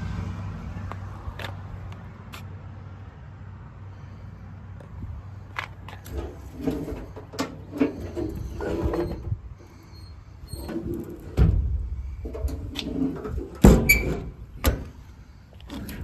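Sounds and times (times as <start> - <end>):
vehicle engine humming: 0.0 - 16.0.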